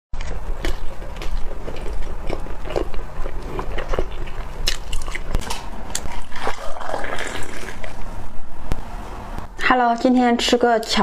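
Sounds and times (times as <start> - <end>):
biting and chewing bread: 0.2 - 8.1.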